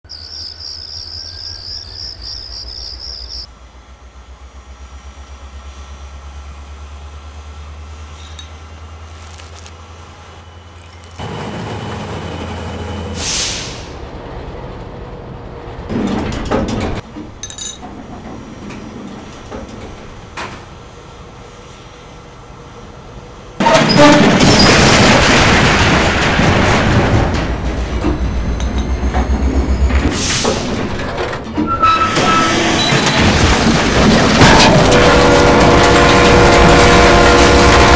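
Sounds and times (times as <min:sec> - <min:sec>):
diesel locomotive engine throb: 0:01.0 - 0:09.2, 0:26.1 - 0:31.8, 0:33.6 - 0:37.9
metal clanks and knocks: 0:15.9 - 0:20.7, 0:23.6 - 0:37.9
building collapsing crash: 0:23.6 - 0:37.9.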